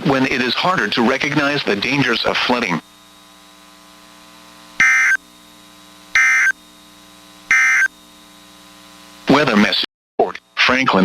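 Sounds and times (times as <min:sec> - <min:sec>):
faint receiver hum: 0:01.0 - 0:11.0
warbling digital tone bursts: 0:04.8 - 0:05.2, 0:06.2 - 0:06.5, 0:07.5 - 0:07.9.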